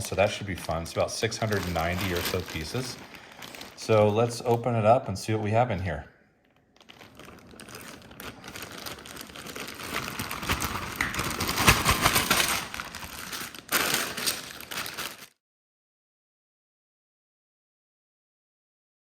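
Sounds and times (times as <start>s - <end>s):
plastic packaging crinkling: 0.0s - 5.7s, 6.4s - 15.4s.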